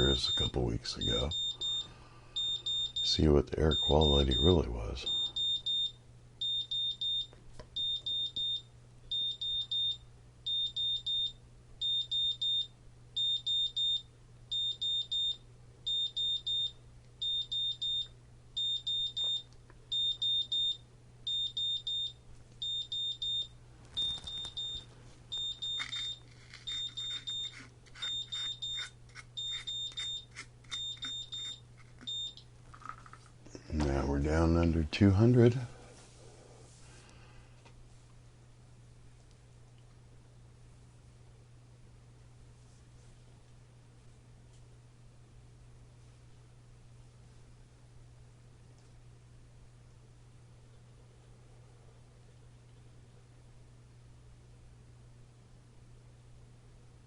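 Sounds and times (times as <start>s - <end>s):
high-pitched alarm beeps: 0.0s - 32.4s.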